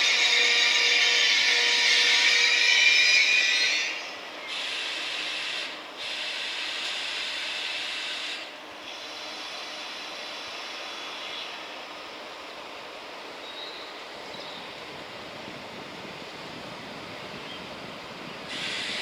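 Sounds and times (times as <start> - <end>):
train wheels squealing on rails: 0.0 - 19.0.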